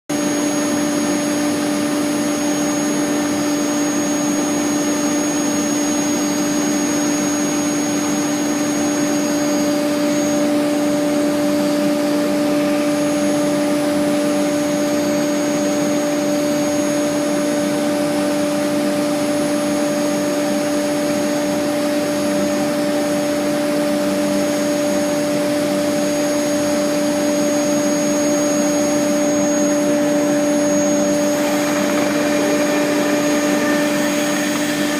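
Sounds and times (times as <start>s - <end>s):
router machine whine: 0.1s - 34.9s
dust collector air rush: 28.4s - 34.9s.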